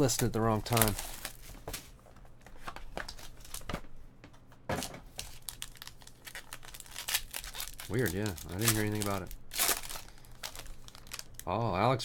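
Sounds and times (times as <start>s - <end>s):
card pack wrappers crinkling: 0.0s - 1.6s, 2.5s - 3.8s, 5.1s - 11.6s
packaging rustle: 0.0s - 1.8s, 2.5s - 3.8s, 5.1s - 11.5s.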